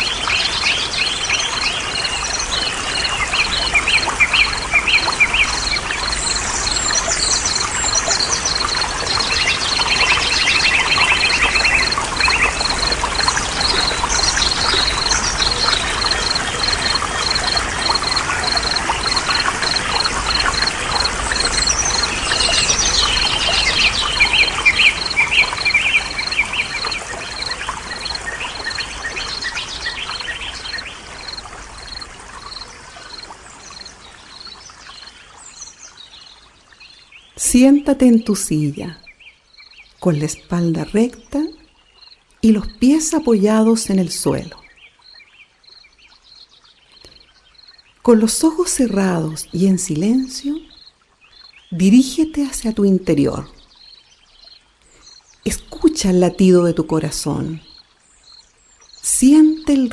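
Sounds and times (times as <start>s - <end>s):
birds chirping and trilling: 0.0s - 59.9s.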